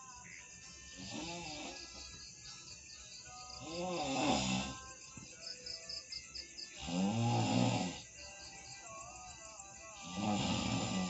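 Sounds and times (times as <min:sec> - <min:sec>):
crickets chirping: 0:00.0 - 0:11.0
person snoring loudly: 0:00.8 - 0:02.0, 0:03.4 - 0:04.9, 0:06.7 - 0:08.2, 0:09.8 - 0:11.0.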